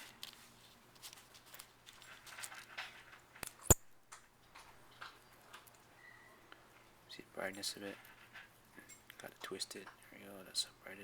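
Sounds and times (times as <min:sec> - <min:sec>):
batteries clicking and scraping: 0:01.2 - 0:03.8.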